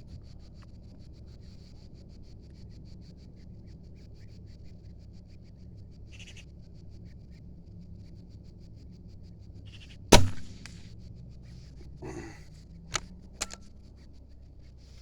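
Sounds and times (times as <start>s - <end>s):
air rifle shot: 10.1s - 10.8s
sharp clicks: 10.2s - 10.8s, 13.0s - 13.6s.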